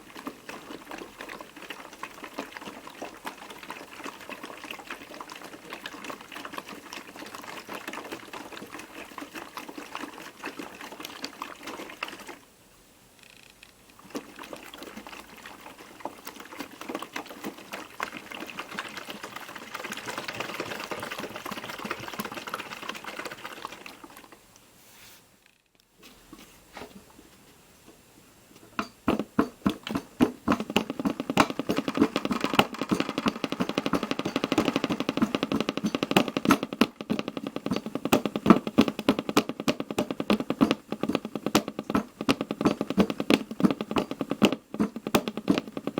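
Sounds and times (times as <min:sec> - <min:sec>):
washing machine drum sloshing: 0:00.0 - 0:12.4, 0:14.0 - 0:24.4, 0:28.6 - 0:45.9
fast rapid knocking: 0:16.6 - 0:24.0, 0:28.8 - 0:45.9.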